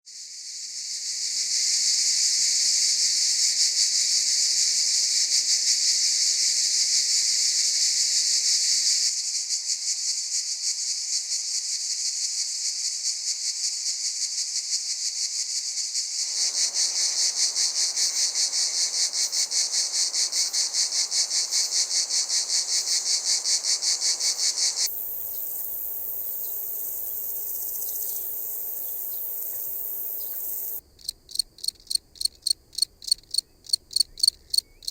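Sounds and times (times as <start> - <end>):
high-pitched insect trill: 0.1 - 34.9
rapidly pulsing insect calls: 0.2 - 34.9
cicadas buzzing: 15.1 - 34.9.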